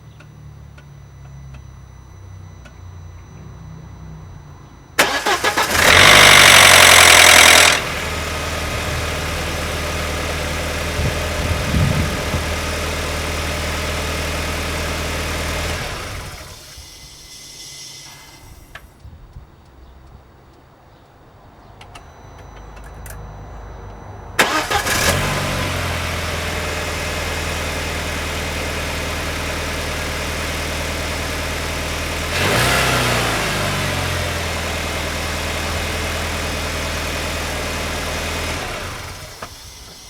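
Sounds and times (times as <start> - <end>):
engine start-up rattle: 5.0 - 18.9, 24.4 - 30.0, 37.5 - 40.0
car engine starting and idling: 5.0 - 19.0, 24.3 - 40.0.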